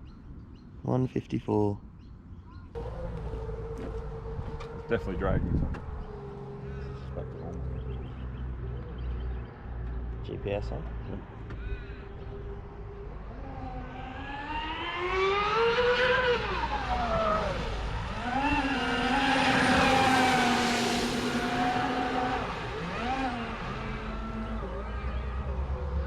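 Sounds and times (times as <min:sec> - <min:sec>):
electric boat motor whine: 0:02.8 - 0:07.3, 0:12.1 - 0:26.0.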